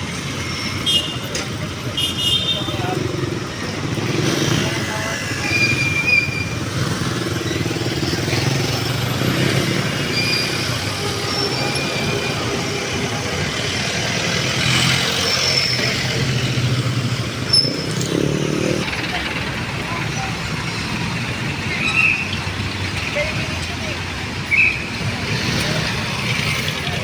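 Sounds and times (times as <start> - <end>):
motorcycles and cars passing: 0.0 - 27.0
vehicle engines running: 0.0 - 27.0
short high-pitched squeaks: 10.0 - 12.8.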